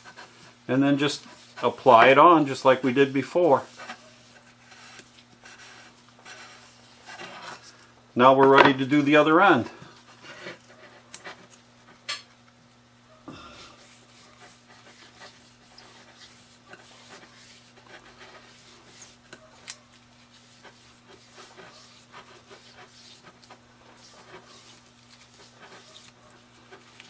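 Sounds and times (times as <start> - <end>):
cloth rubbing on wood: 0.0 - 7.6, 13.8 - 19.2, 19.8 - 27.0
steady low hum: 0.0 - 27.0.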